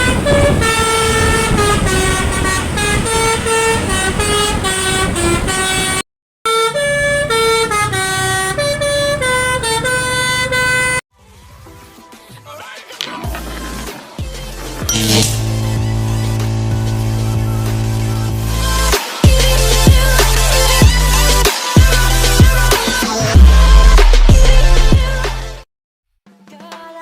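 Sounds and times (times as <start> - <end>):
bus horn playing a melody: 0.0 - 11.0, 14.9 - 22.8
low rumble: 14.9 - 18.9.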